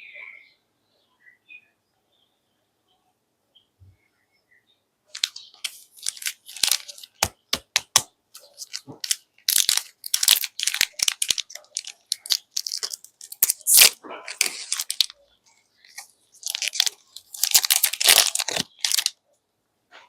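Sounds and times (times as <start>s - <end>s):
plastic wrapper crinkling and tearing: 5.1s - 15.2s, 15.8s - 19.2s.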